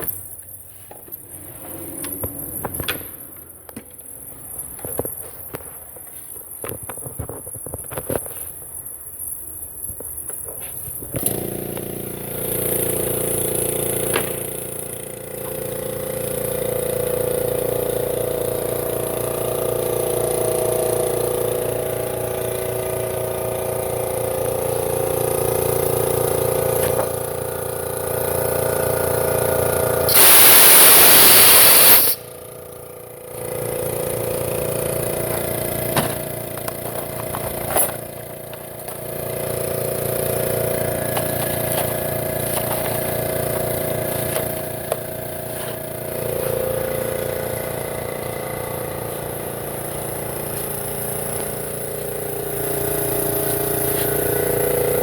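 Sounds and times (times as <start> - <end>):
air compressor running: 0.0 - 55.0
air hissing: 30.1 - 32.4.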